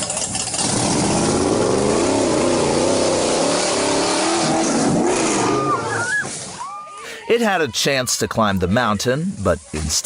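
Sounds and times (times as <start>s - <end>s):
vehicle engine revving: 0.0s - 6.5s.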